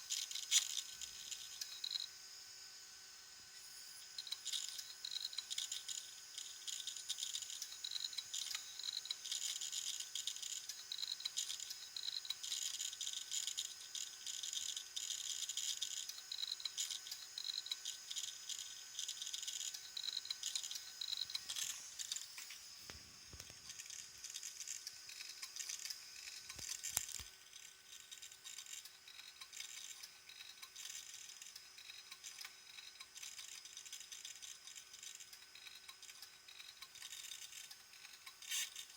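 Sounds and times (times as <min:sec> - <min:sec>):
hard drive low hum: 0:00.0 - 0:38.9
hard drive grinding rattle: 0:04.1 - 0:38.9.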